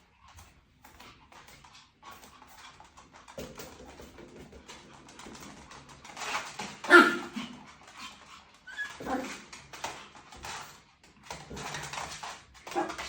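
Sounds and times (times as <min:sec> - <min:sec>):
dog whining: 0:06.9 - 0:07.5, 0:08.7 - 0:09.4
dog yipping: 0:06.9 - 0:07.5, 0:08.7 - 0:09.4.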